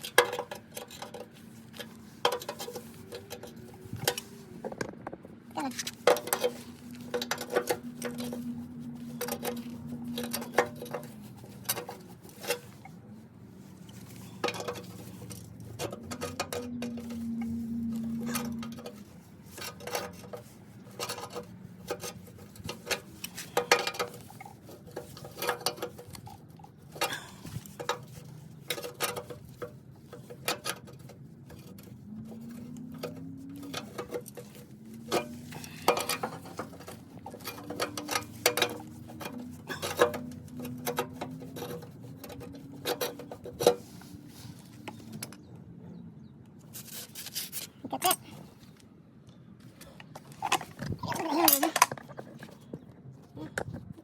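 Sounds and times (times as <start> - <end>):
hand tools clinking on metal: 14.2 - 26.3, 27.0 - 43.8, 50.3 - 52.5.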